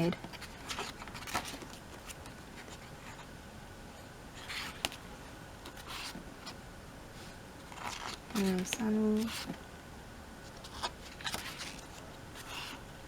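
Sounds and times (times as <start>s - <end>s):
book pages turning: 0.2s - 3.3s, 4.4s - 5.0s, 5.6s - 6.6s, 7.2s - 9.6s, 10.4s - 12.8s.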